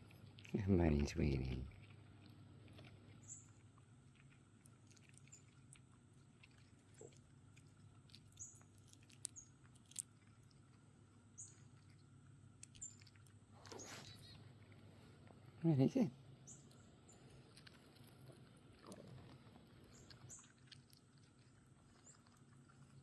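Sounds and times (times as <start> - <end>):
chipmunk eating clicks and crunches: 0.0 - 23.0.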